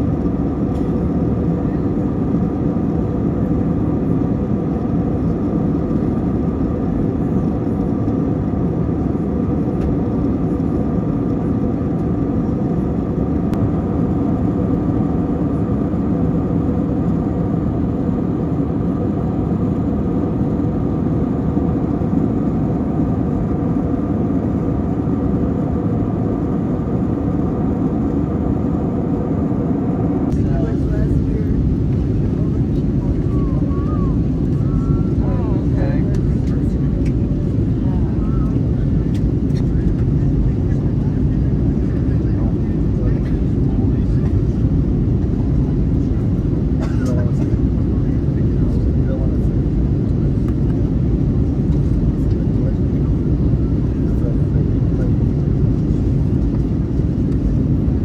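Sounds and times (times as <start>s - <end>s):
airplane cabin engine and airflow noise: 0.0s - 58.0s
faint hum: 26.9s - 44.3s.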